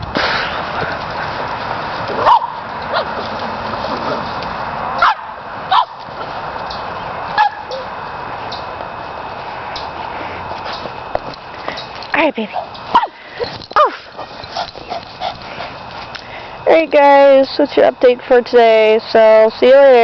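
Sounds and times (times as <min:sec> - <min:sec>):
dog barking: 0:02.2 - 0:03.1, 0:05.0 - 0:06.0, 0:07.4 - 0:07.8, 0:12.9 - 0:13.2.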